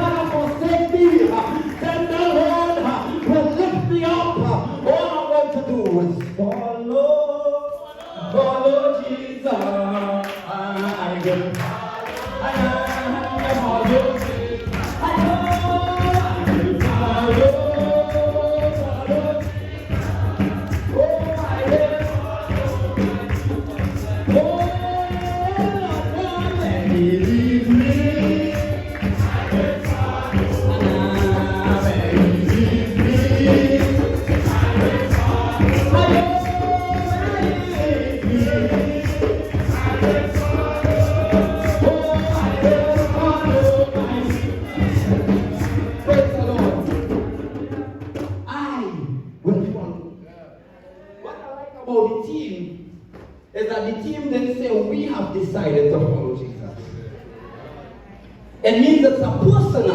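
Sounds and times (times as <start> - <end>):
tambourine shaking: 0.0 - 4.1, 11.6 - 48.0
congregation and choir singing: 0.0 - 5.1, 6.8 - 48.9
man singing: 0.0 - 50.0
live band playing: 21.4 - 48.5.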